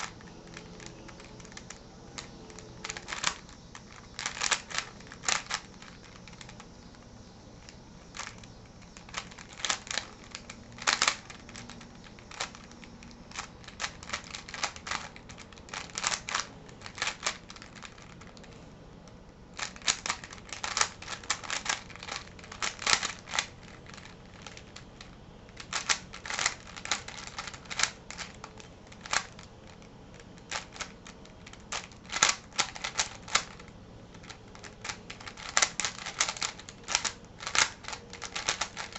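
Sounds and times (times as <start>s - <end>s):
plastic puzzle layers clicking: 7.6s - 18.6s, 19.6s - 38.9s.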